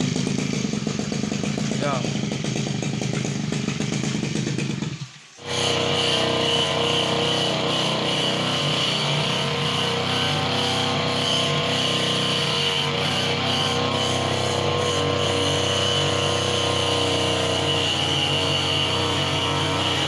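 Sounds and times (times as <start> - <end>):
brush cutter engine running: 0.0 - 20.0.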